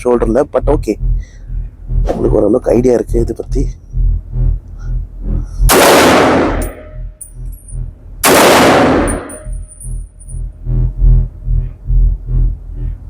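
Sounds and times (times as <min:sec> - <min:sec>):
rifle shots with ringing echo: 0:05.7 - 0:06.9, 0:08.2 - 0:09.6
faint metallic clinks: 0:06.6 - 0:07.9, 0:09.1 - 0:10.5.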